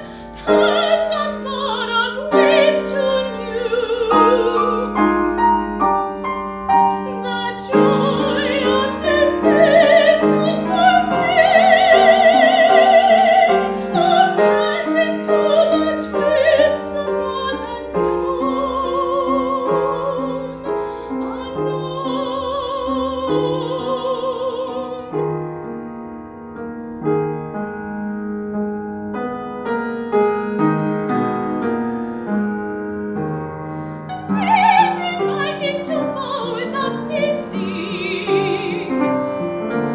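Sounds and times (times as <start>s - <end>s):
woman singing with vibrato: 0.0s - 5.2s, 7.0s - 25.3s, 33.9s - 39.2s
piano accompaniment: 0.0s - 39.9s.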